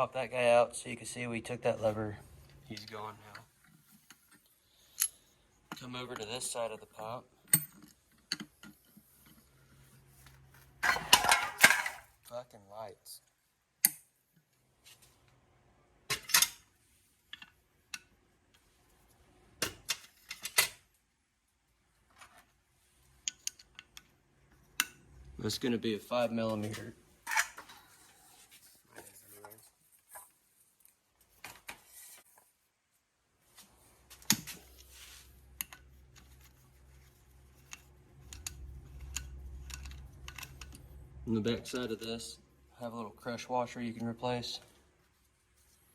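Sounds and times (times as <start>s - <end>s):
metallic clicks of hand tools: 4.9s - 5.2s
hand tools clinking on metal: 10.8s - 12.1s
low steady hum: 33.8s - 45.9s.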